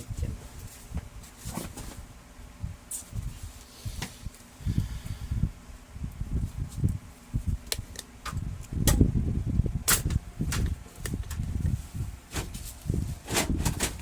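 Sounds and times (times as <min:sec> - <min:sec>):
objects rummaged by hand: 0:00.6 - 0:02.1, 0:10.5 - 0:14.0.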